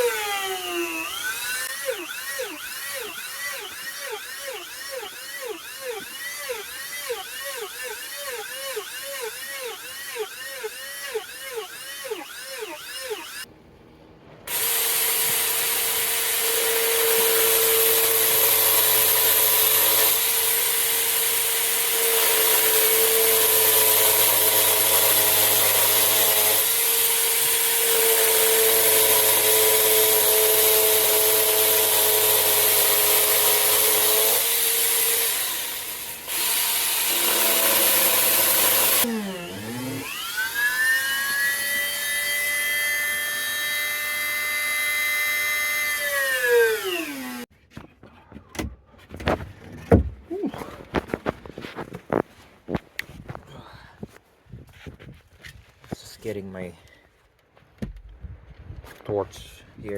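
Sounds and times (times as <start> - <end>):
power tool cutting wood: 0.0 - 13.5, 14.5 - 47.5.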